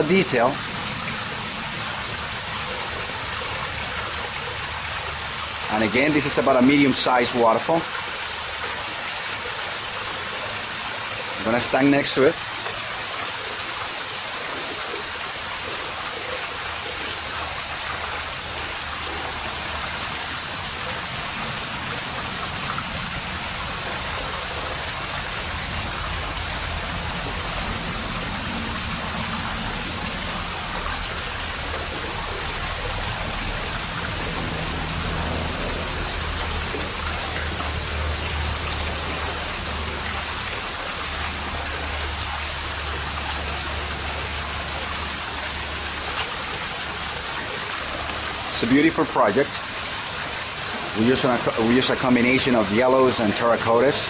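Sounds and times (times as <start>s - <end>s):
waterfall rushing into pool: 0.0s - 54.0s
low hum: 12.4s - 50.9s.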